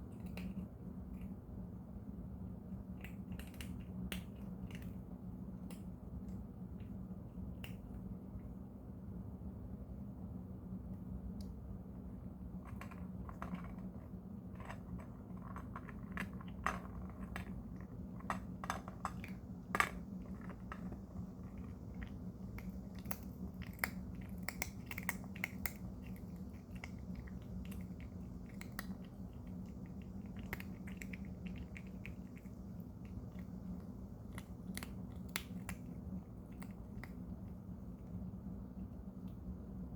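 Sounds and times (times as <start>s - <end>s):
cat crunching hard treats: 12.7s - 37.7s.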